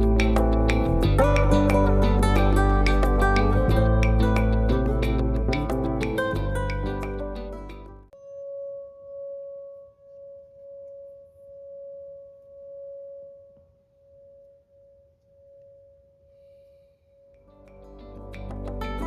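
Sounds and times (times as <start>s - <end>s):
plucked-string music: 0.0s - 8.2s, 17.5s - 19.0s
sustained ringing tone: 8.1s - 17.7s.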